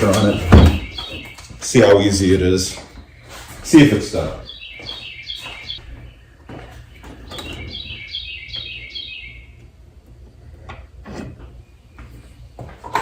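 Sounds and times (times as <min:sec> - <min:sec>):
small bird chirping: 0:00.0 - 0:01.6, 0:04.4 - 0:09.7
steady low hum: 0:00.0 - 0:13.0.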